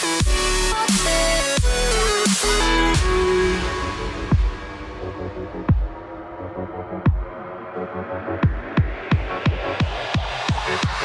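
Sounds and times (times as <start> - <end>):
electronic background music: 0.0 - 11.0
bass hit dropping in pitch: 1.0 - 7.4.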